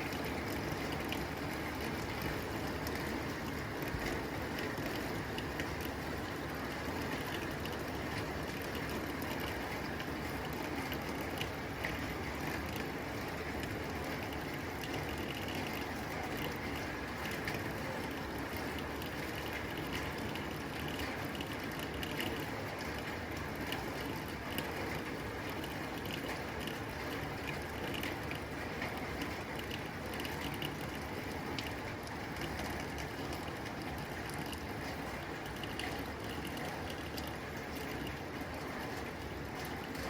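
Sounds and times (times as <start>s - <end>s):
rain on a tin roof: 0.0s - 40.0s.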